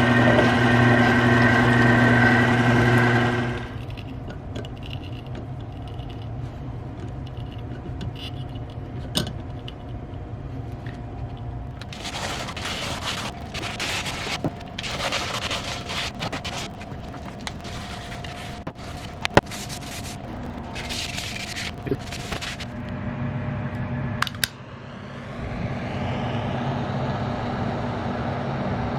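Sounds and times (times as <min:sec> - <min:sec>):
scraping: 0:00.0 - 0:06.6, 0:11.7 - 0:22.9.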